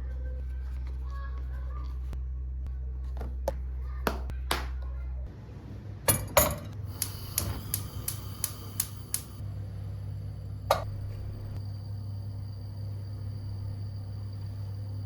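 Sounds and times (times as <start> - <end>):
steady low hum: 5.1 - 15.0.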